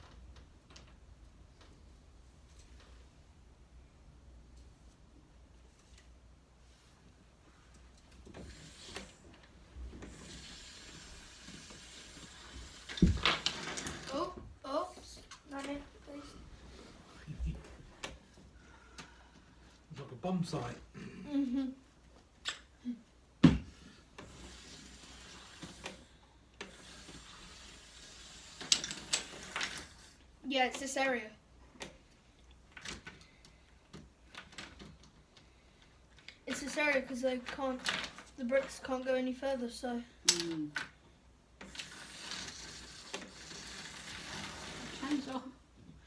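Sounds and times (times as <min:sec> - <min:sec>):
toy train motor whirring: 0:08.4 - 0:09.3, 0:10.0 - 0:14.4, 0:24.2 - 0:30.2, 0:41.6 - 0:45.5.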